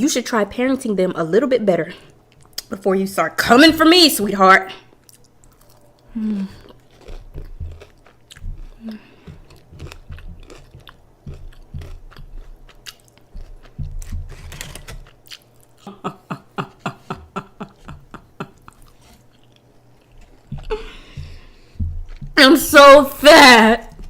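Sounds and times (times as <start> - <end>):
crunching fried chicken: 5.0 - 15.9
chewing clicks: 9.5 - 13.8.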